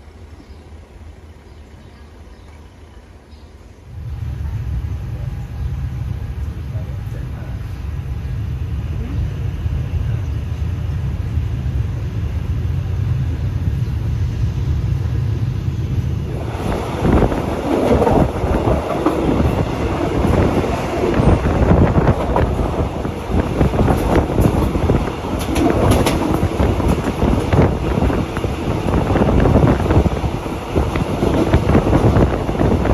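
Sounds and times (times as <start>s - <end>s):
moving vehicle rumble: 0.0s - 32.9s
wind buffeting microphone: 7.2s - 32.9s.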